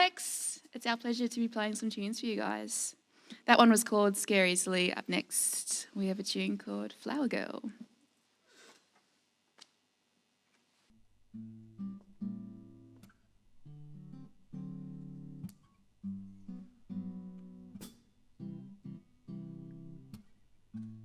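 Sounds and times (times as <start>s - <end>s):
acoustic guitar chords: 11.3s - 21.0s.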